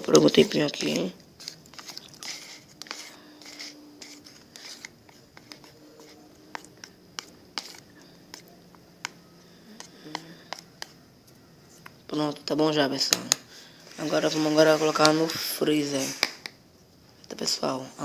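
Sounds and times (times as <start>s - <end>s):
spoon stirring in a pot: 0.0s - 11.0s.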